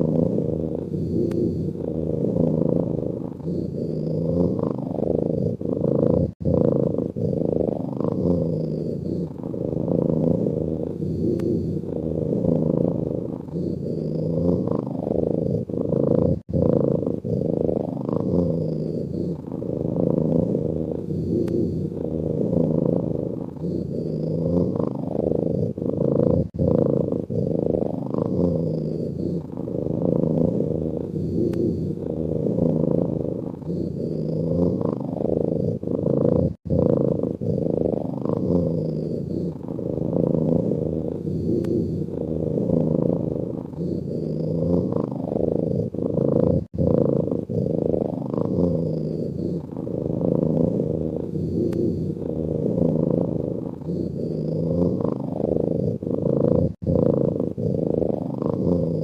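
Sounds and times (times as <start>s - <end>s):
cat purr-like breathing: 0.0s - 59.0s.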